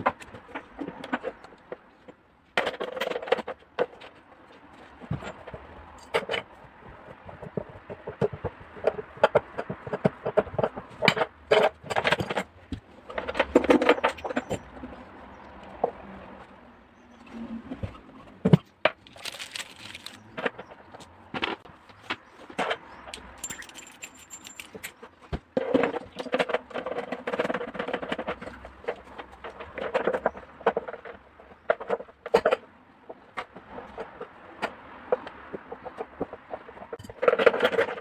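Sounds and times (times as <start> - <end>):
metal parts and tools clinking: 8.8 - 15.0, 17.8 - 20.8, 21.5 - 30.9, 36.8 - 38.0.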